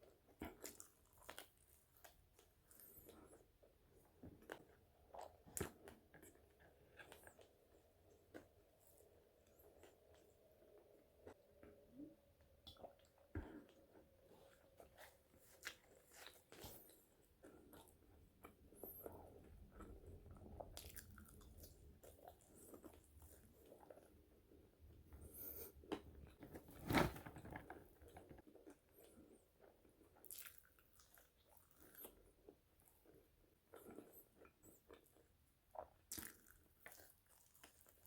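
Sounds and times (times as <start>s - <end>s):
person chewing crunchy fries: 0.0s - 3.5s, 12.7s - 24.5s, 28.3s - 38.0s.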